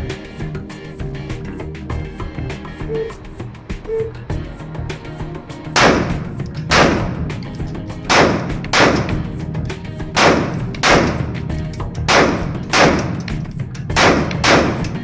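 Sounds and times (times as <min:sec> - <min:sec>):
background music with heavy beat: 0:00.0 - 0:15.0.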